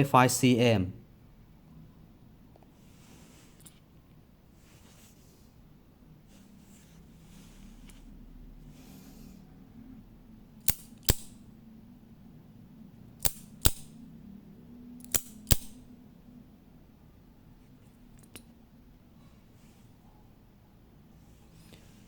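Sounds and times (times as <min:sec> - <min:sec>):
knife blade metallic snaps: 0:10.7 - 0:11.4, 0:13.2 - 0:13.9, 0:15.0 - 0:15.8.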